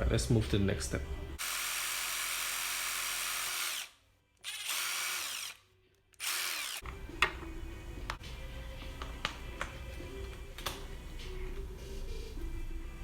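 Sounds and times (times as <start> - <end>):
cordless power drill drilling: 1.4 - 5.6, 6.2 - 6.8.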